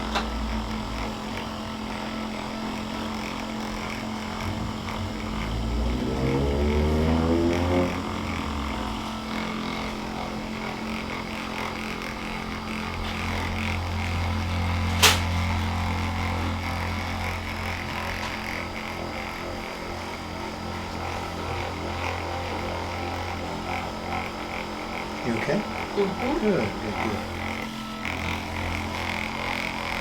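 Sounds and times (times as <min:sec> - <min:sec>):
electric massager humming: 0:00.0 - 0:30.0
sharp click: 0:14.9 - 0:15.3.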